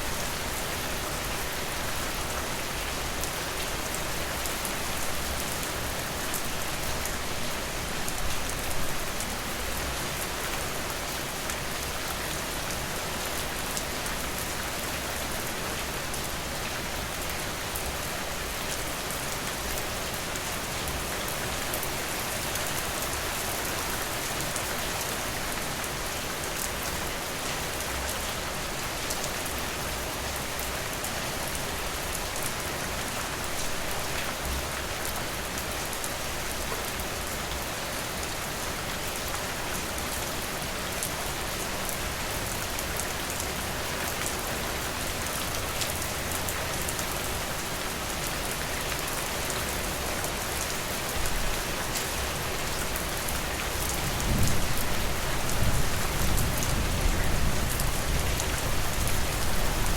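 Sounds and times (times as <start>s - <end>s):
steady rain: 0.0s - 59.9s.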